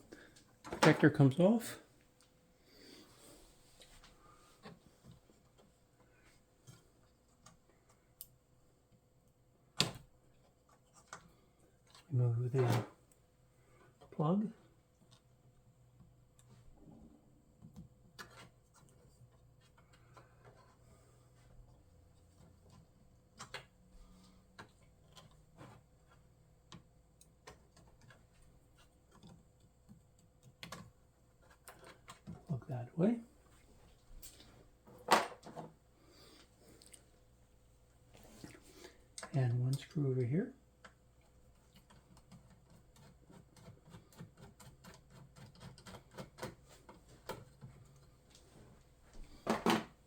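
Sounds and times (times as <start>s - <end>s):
small clicks and taps: 24.5s - 32.5s.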